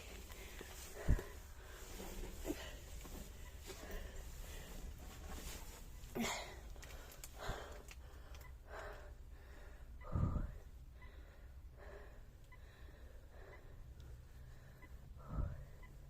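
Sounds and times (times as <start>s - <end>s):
person breathing: 0.0s - 15.8s.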